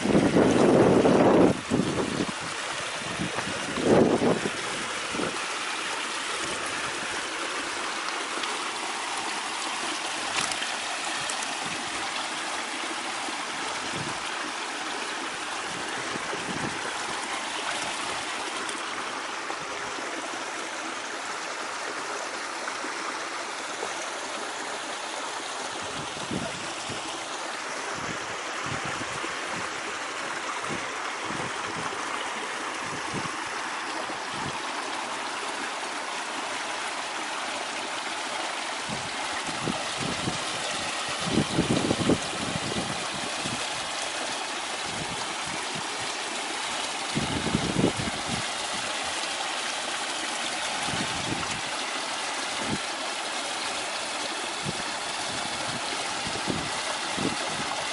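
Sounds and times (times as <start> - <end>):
small waterfall rushing: 0.0 - 57.9
soft low water gurgles: 0.0 - 57.9.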